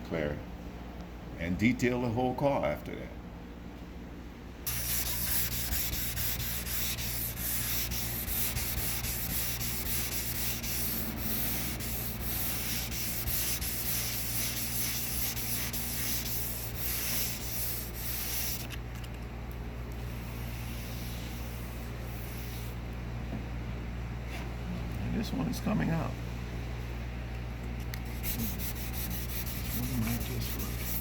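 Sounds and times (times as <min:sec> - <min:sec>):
orbital sander motor hum: 0:04.7 - 0:18.1, 0:28.1 - 0:31.0.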